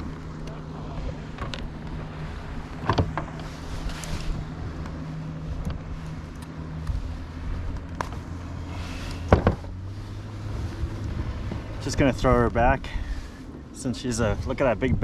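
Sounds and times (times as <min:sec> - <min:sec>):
steady low hum: 0:00.0 - 0:15.0
wind buffeting microphone: 0:09.2 - 0:15.0.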